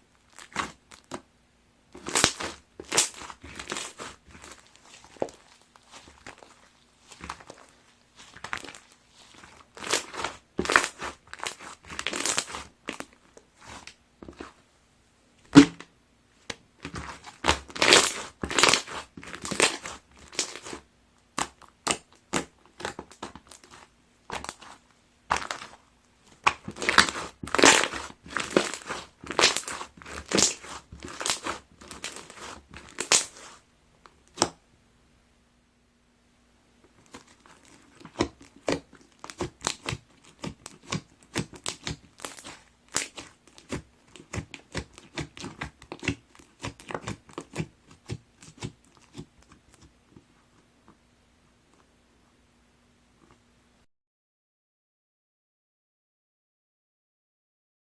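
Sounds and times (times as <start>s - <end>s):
slime crackling and popping: 0.2s - 1.2s, 2.0s - 14.6s, 16.8s - 33.6s, 36.9s - 49.9s
sharp knock: 15.6s - 15.8s.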